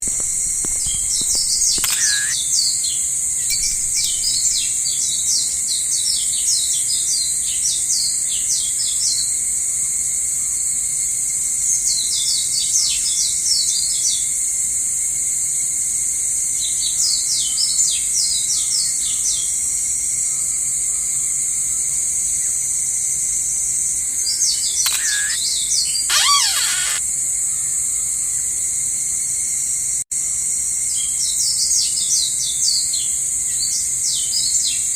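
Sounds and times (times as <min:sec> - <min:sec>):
small birds chirping: 0:00.0 - 0:02.5, 0:24.3 - 0:27.0
crickets chirping: 0:00.0 - 0:05.2, 0:22.2 - 0:27.0.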